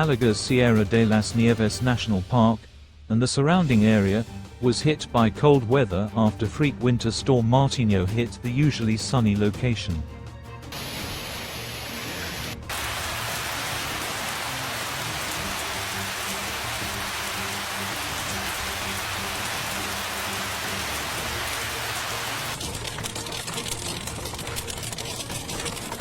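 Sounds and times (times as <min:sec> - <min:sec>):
hail pelting down: 0:10.8 - 0:26.0.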